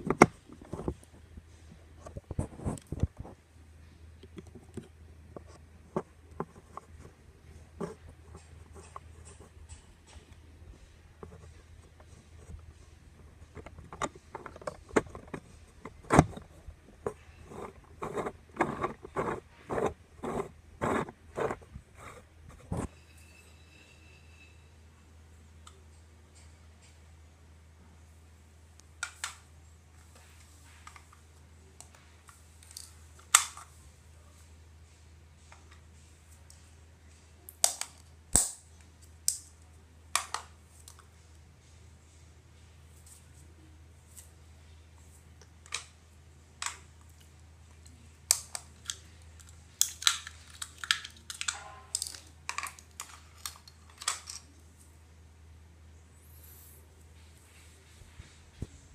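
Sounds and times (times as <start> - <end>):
clicks from handling small objects: 37.5 - 39.6, 48.3 - 54.5.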